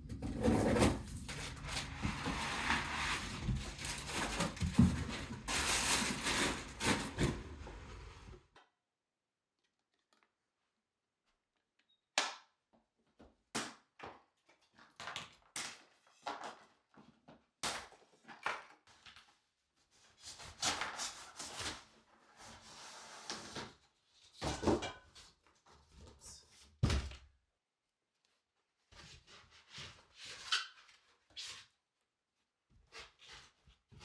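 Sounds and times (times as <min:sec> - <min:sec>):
cardboard rustling scrapes: 0:00.1 - 0:08.4, 0:20.2 - 0:23.9.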